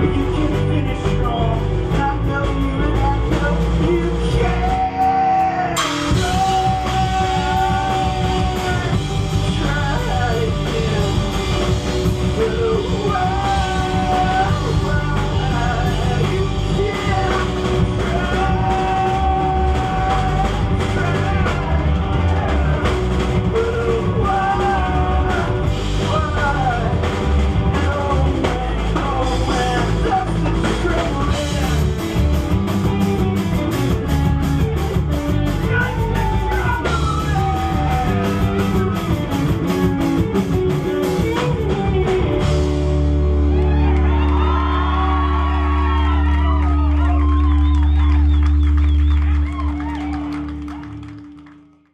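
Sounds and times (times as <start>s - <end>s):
person singing: 0.0s - 47.7s
live rock band playing: 0.0s - 51.9s.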